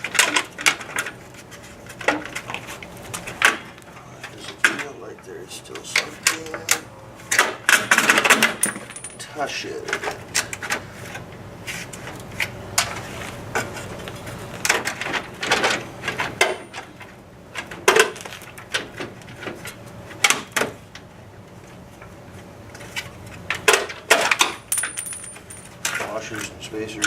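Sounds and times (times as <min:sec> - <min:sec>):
metal fasteners and tools clinking: 0:07.8 - 0:10.1, 0:24.1 - 0:26.5.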